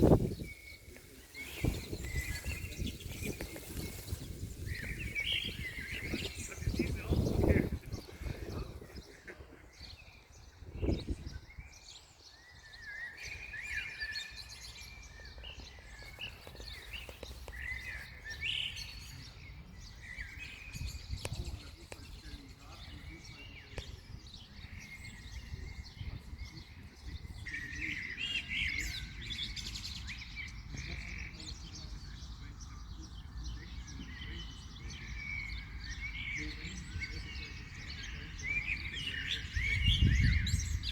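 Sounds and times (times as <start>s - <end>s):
wind rumbling on microphone: 0.0s - 11.8s, 19.8s - 27.7s, 36.5s - 40.9s
small birds chirping: 0.0s - 40.9s.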